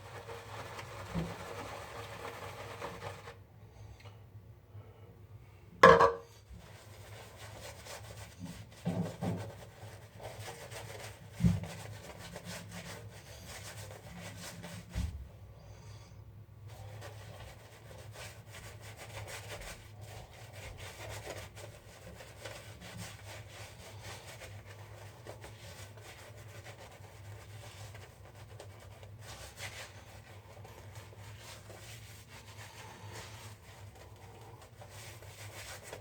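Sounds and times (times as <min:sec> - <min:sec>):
shaving brush swishing lather: 0:16.8 - 0:36.0.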